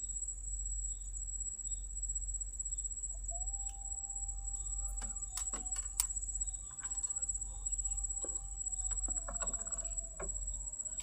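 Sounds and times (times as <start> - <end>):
crickets trilling: 0.0 - 11.0
lower-pitched insect call: 0.0 - 11.0.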